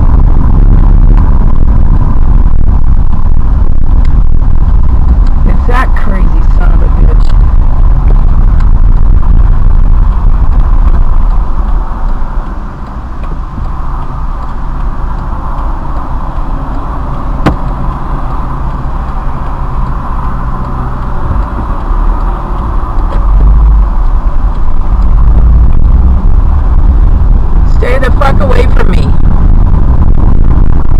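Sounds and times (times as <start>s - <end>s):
car cabin rumble: 0.0s - 30.9s
sharp click: 17.4s - 18.1s.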